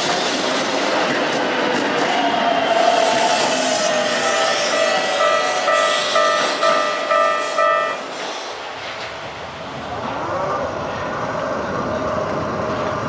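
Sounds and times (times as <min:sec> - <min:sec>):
passing train: 0:00.0 - 0:13.0
level crossing bell ringing: 0:05.2 - 0:08.1.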